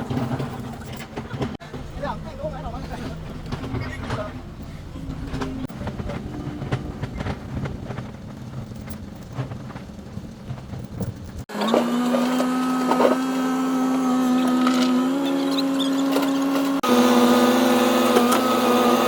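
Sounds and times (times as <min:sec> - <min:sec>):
engine low rumble with knocks: 0:00.0 - 0:11.5
engine high-pitched drone: 0:01.6 - 0:09.0.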